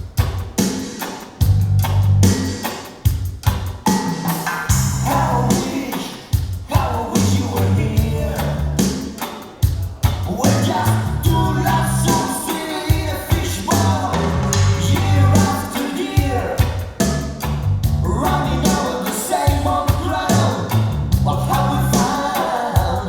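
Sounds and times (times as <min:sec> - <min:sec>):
drum beat: 0:00.0 - 0:23.0
deep repeating bass line: 0:01.4 - 0:02.3, 0:04.7 - 0:05.6, 0:07.2 - 0:08.8, 0:10.5 - 0:12.2, 0:13.8 - 0:15.8, 0:17.0 - 0:18.8, 0:20.3 - 0:22.0
person singing: 0:04.9 - 0:17.4, 0:18.0 - 0:23.0.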